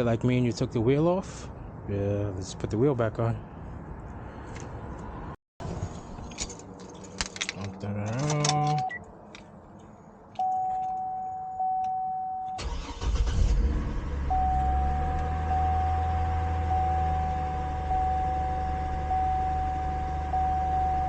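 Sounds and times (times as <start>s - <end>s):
electronic dash chime: 10.4s - 12.7s, 14.3s - 21.0s
starter cranking engine: 12.6s - 14.0s
car engine idling: 12.6s - 21.0s.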